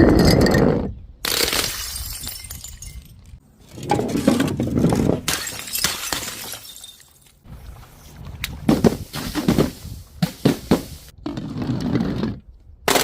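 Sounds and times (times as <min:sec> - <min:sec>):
glass bottles shattering: 0:01.3 - 0:03.4, 0:05.2 - 0:07.4.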